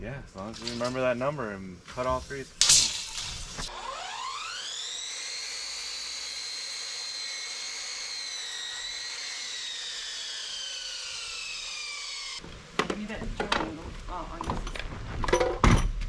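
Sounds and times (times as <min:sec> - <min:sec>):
power tool motor whining: 0:02.7 - 0:12.4.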